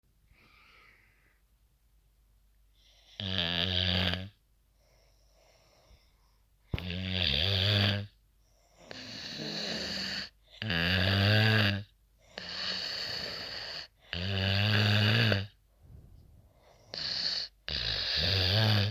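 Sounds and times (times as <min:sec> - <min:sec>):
faint breathing: 0:00.3 - 0:01.5, 0:15.7 - 0:17.7
person snoring loudly: 0:08.9 - 0:15.5, 0:16.9 - 0:18.9.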